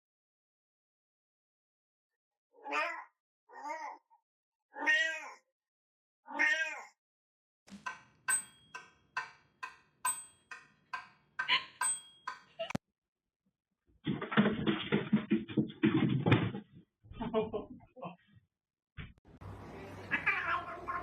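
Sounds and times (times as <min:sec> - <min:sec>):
cat meowing: 0:04.8 - 0:05.4, 0:06.3 - 0:07.0, 0:20.1 - 0:21.0.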